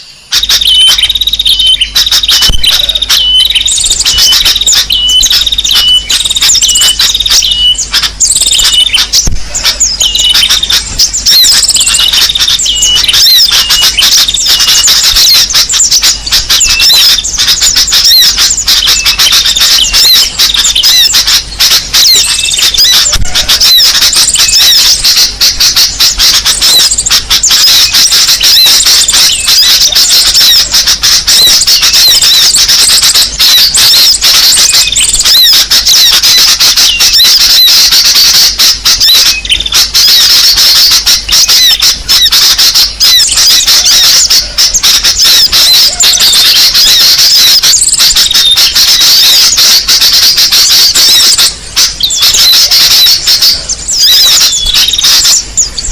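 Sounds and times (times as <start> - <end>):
songbirds chirping: 0.0 - 55.9.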